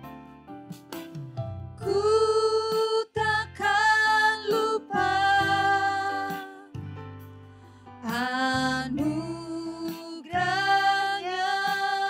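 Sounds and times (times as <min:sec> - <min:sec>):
backing music with bass: 0:00.0 - 0:12.0
person singing: 0:01.8 - 0:06.8, 0:08.0 - 0:12.0.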